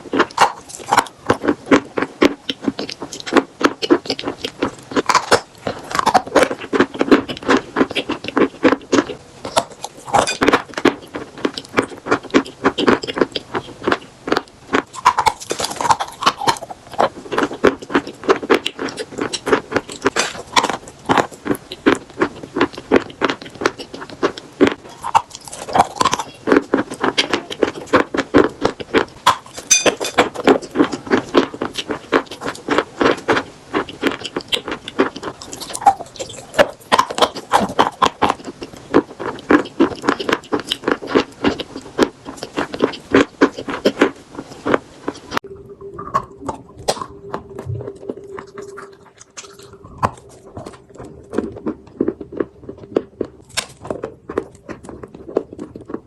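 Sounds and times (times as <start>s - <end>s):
crunchy chewing: 0.0s - 56.0s
wet mouth sounds: 0.0s - 56.0s.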